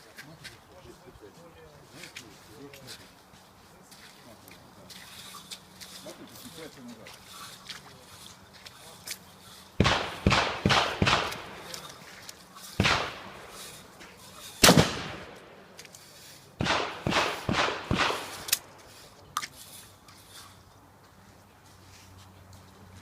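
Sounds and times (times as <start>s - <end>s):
shotgun shots with echo: 9.8s - 11.8s, 12.8s - 13.7s, 14.6s - 15.6s, 16.6s - 18.6s.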